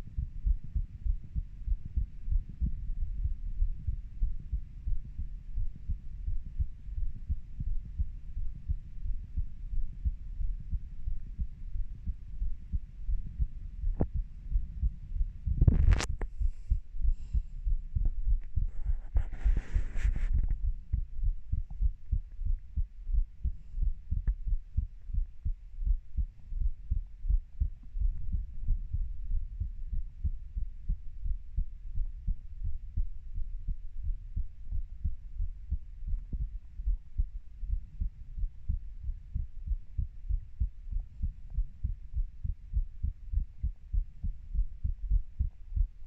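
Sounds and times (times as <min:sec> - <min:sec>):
heartbeat thumps: 0:00.0 - 0:46.0
rustling noise: 0:15.5 - 0:16.7, 0:18.4 - 0:20.9.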